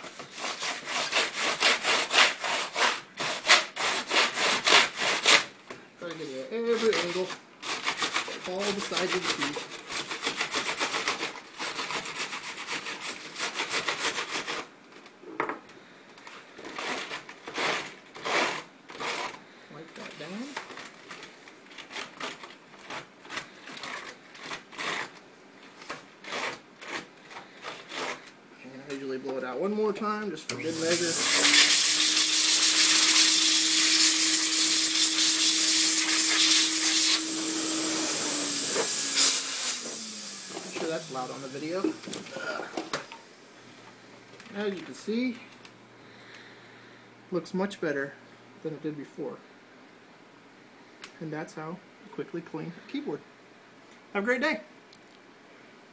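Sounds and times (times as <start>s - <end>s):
vacuum motor hum: 30.5s - 42.4s
vacuum cleaner air rushing: 30.5s - 43.4s
brush scrubbing wet keyboard keys: 30.8s - 37.2s.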